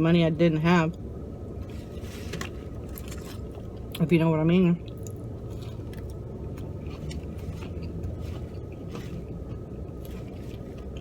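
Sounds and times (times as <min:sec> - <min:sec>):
car interior hum: 0:00.0 - 0:11.0
person chewing food: 0:01.6 - 0:04.0, 0:04.8 - 0:11.0.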